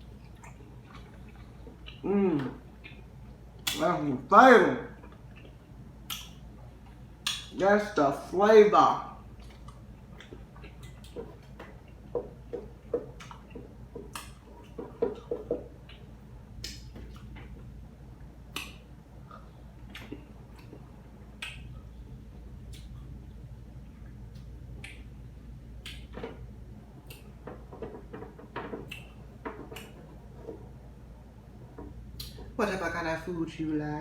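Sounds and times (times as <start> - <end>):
person chewing food: 0.0 - 3.8, 4.9 - 7.5, 9.2 - 31.0
low steady hum: 0.0 - 34.0
wet mouth clicks and smacks: 0.3 - 3.9, 5.0 - 7.5, 9.3 - 12.0, 12.9 - 17.5, 18.5 - 21.9, 22.6 - 23.0, 24.3 - 25.2, 25.8 - 26.2, 27.0 - 27.4, 28.8 - 30.0, 32.1 - 32.5.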